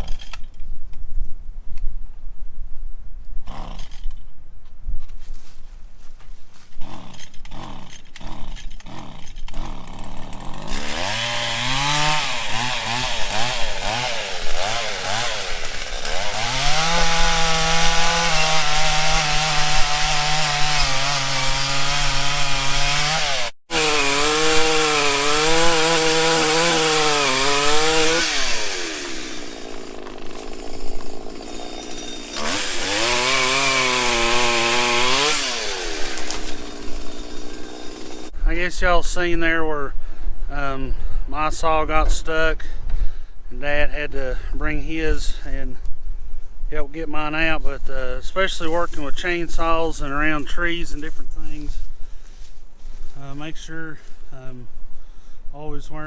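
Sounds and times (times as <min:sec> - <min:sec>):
chainsaw revving and cutting wood: 0:06.8 - 0:38.4.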